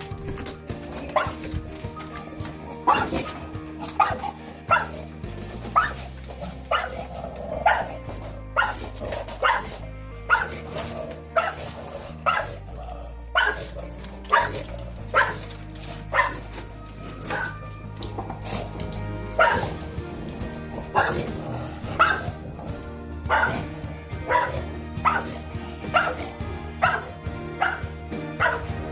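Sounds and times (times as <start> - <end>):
background music: 0.0 - 28.9
dog barking: 1.1 - 1.6, 2.2 - 5.1, 5.8 - 10.8, 11.4 - 12.6, 13.3 - 16.6, 17.2 - 17.7, 19.4 - 19.9, 20.7 - 22.4, 23.3 - 28.8.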